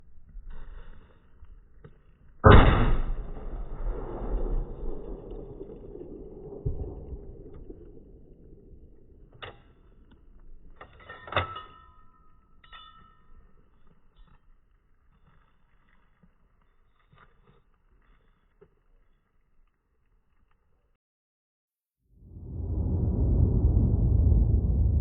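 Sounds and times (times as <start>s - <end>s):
rifle shot with echo: 2.4s - 9.3s.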